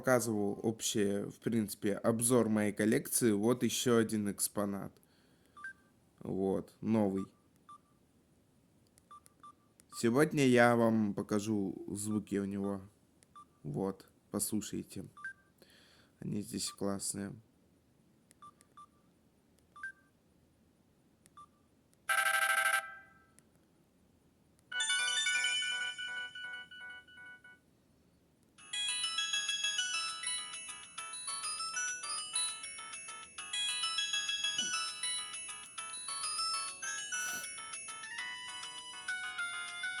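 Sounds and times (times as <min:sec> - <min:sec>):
mobile phone polyphonic ringtone: 0:22.1 - 0:23.2, 0:24.7 - 0:27.6, 0:28.6 - 0:40.0.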